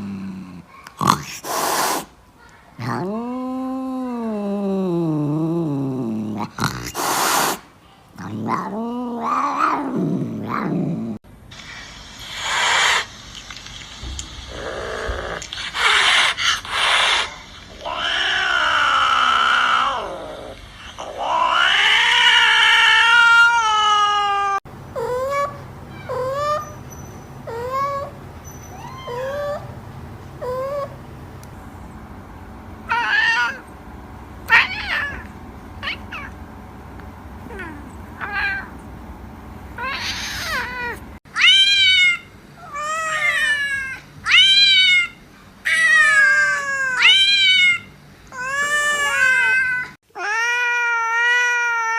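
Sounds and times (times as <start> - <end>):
cats yowling: 8.2 - 11.2, 17.2 - 29.8, 30.4 - 31.0, 32.8 - 33.8, 34.4 - 36.4, 37.4 - 38.8, 39.8 - 51.9
cats meowing: 17.7 - 29.8, 30.4 - 31.0, 32.8 - 36.4, 37.4 - 38.9, 39.8 - 51.9.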